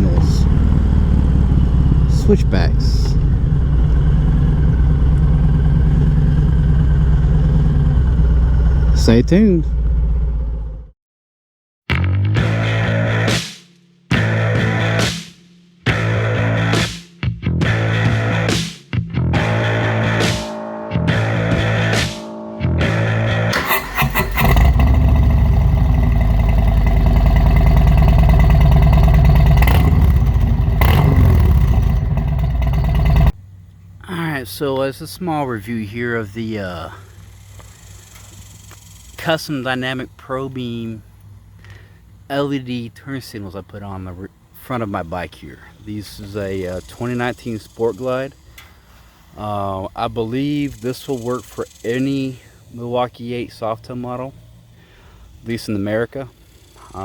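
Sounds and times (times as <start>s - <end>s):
motorcycle engine running: 0.0s - 10.9s, 22.9s - 34.0s, 36.9s - 39.5s.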